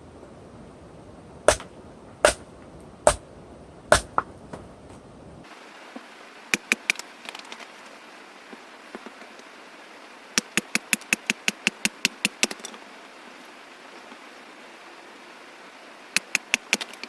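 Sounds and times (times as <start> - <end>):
faint hiss: 0.0 - 17.0
sharp knocks: 1.5 - 2.4.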